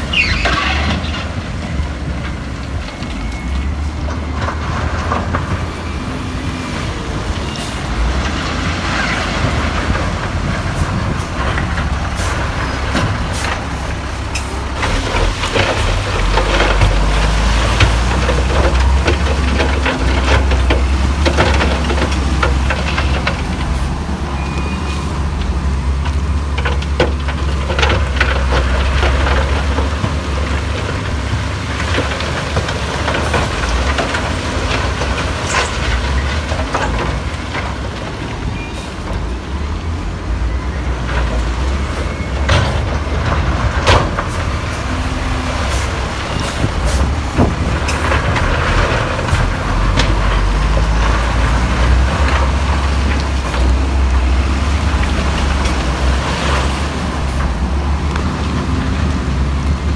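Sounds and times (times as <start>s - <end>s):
heavy diesel machinery rumble: 0.0s - 59.9s
metal clanks and knocks: 7.6s - 24.0s.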